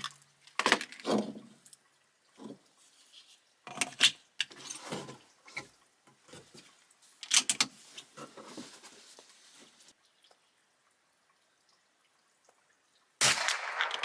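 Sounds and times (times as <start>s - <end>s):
handling clicks and rustles: 3.7s - 9.9s.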